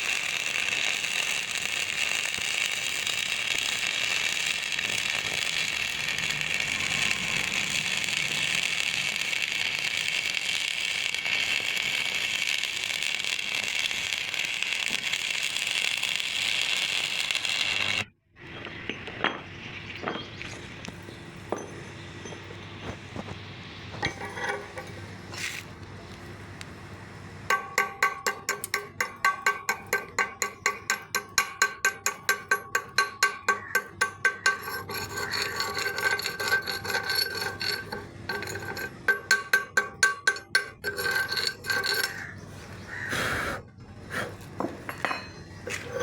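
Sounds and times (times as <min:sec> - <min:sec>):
hammer strokes on ringing steel: 0:27.5 - 0:42.2.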